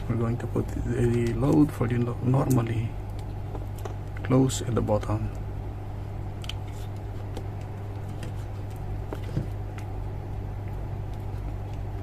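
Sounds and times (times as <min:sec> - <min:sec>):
steady low hum: 0:00.0 - 0:12.0
clicks of small parts and wires: 0:02.4 - 0:04.4.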